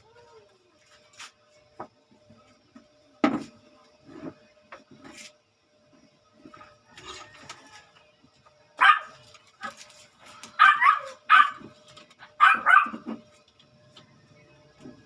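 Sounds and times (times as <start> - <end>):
dog barking: 8.8 - 9.2, 10.6 - 11.7, 12.4 - 13.1.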